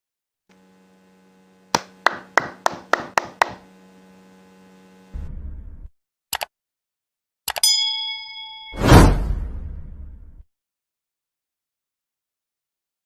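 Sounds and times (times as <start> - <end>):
sharp ringing taps: 7.6 - 8.8.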